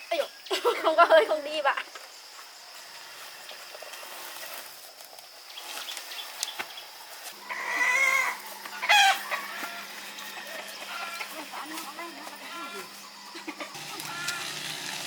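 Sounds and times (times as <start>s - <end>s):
high insect buzz: 1.4s - 15.0s
chickens calling: 5.6s - 15.0s.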